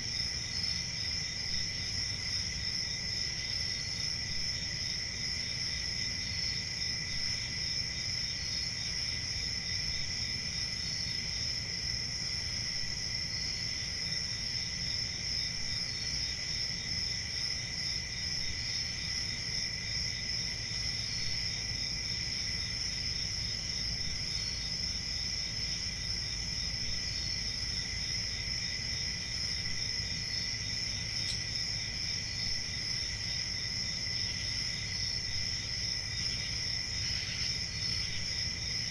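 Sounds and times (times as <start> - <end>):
crickets trilling: 0.0 - 38.9
short cricket chirp: 30.5 - 38.9.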